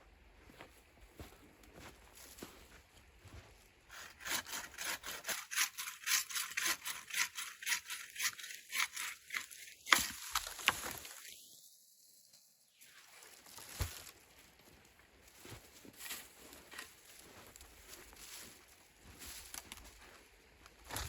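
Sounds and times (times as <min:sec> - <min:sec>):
hand saw cutting wood: 0:03.9 - 0:10.3
wood cracking: 0:06.6 - 0:11.2.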